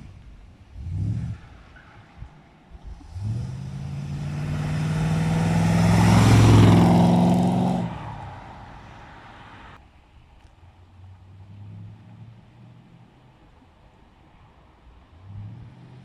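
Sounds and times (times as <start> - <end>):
vehicle engine passing by: 0.7 - 9.8.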